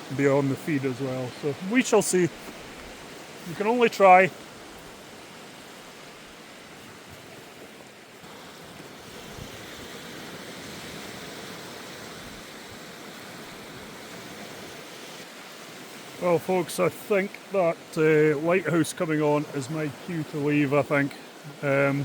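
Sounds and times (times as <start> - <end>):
surf waves washing: 0.0 - 22.0.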